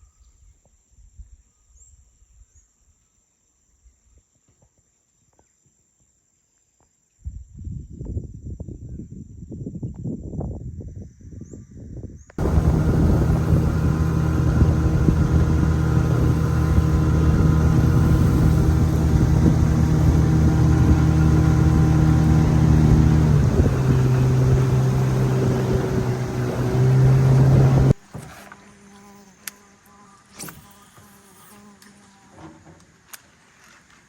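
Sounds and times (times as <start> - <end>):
boat motor running: 12.4 - 28.0.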